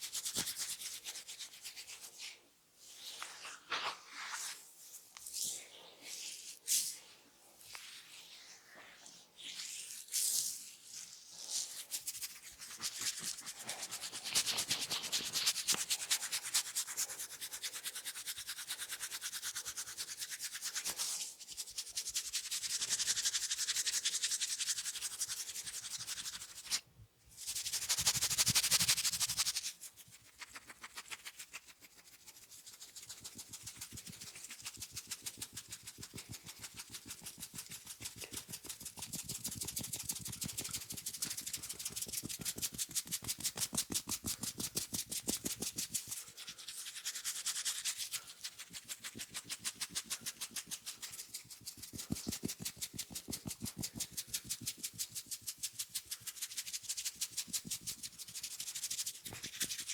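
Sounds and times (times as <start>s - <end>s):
fingers scratching hair: 9.9s - 18.7s, 27.4s - 59.9s.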